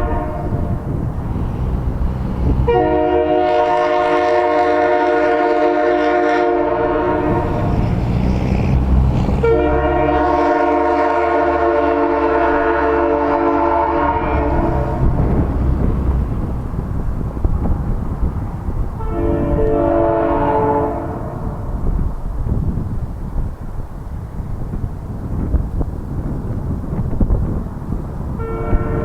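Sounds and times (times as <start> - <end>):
air horn blasts: 0.0 - 1.0, 2.4 - 8.2, 9.4 - 15.9, 19.0 - 21.6, 28.4 - 29.0
low rumble: 0.0 - 3.8, 6.6 - 23.1.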